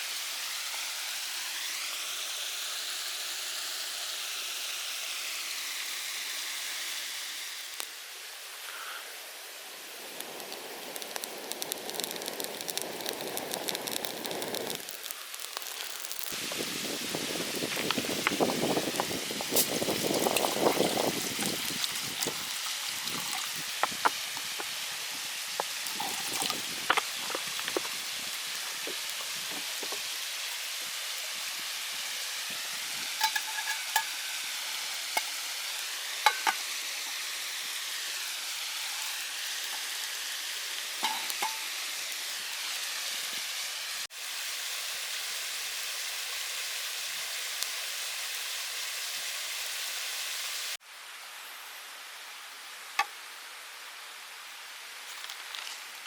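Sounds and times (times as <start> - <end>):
food sizzling over campfire: 0.0 - 56.0
fire popping and crackling: 9.8 - 31.3.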